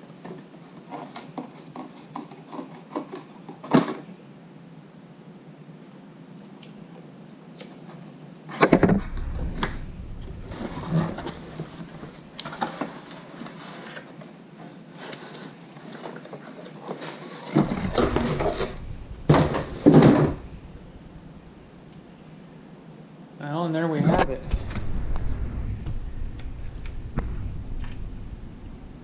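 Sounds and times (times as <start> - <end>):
rustling packaging: 10.5 - 14.3, 14.9 - 21.6.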